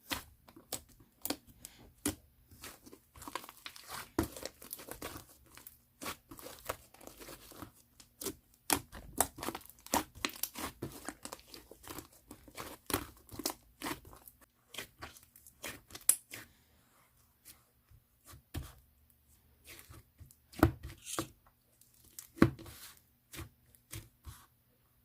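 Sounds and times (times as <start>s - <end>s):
hands squishing slime: 0.0s - 16.6s.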